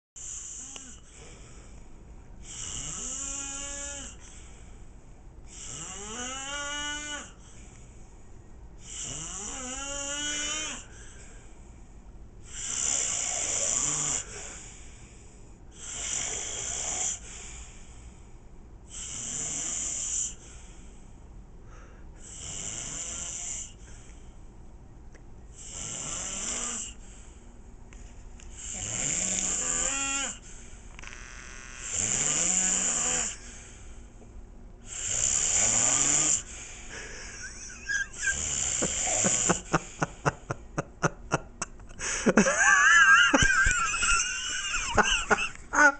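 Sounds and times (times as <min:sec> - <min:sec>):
man snoring: 0:00.2 - 0:01.6, 0:02.4 - 0:04.2, 0:05.5 - 0:07.4, 0:08.8 - 0:10.9, 0:12.4 - 0:15.1, 0:15.8 - 0:17.5, 0:18.9 - 0:20.4, 0:22.2 - 0:23.8, 0:25.6 - 0:27.0, 0:28.6 - 0:30.4, 0:31.2 - 0:33.7, 0:34.8 - 0:41.1, 0:43.1 - 0:45.9.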